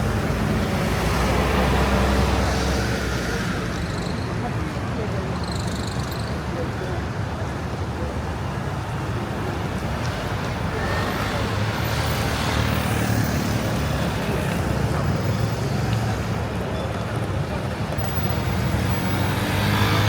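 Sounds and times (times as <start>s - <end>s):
city street traffic rumble: 0.0s - 20.0s
vehicle passing by: 18.5s - 20.0s.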